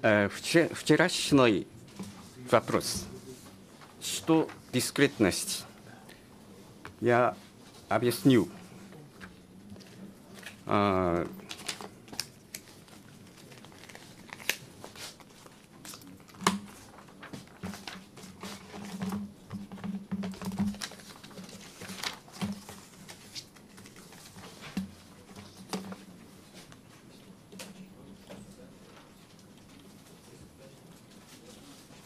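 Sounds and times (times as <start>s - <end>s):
paper crinkling: 11.4s - 19.2s, 20.6s - 24.8s.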